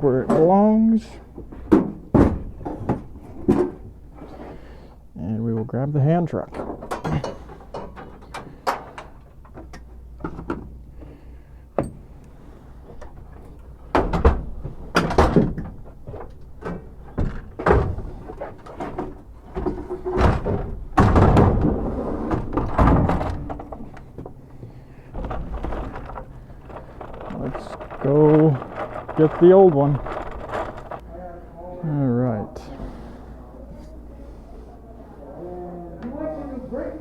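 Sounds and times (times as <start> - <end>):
gear knocking and clanking: 13.0 - 31.0.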